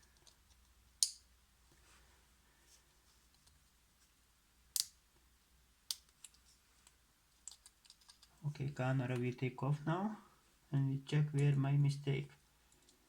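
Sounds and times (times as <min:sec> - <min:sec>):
clicks of small tools and parts: 0:05.9 - 0:08.4.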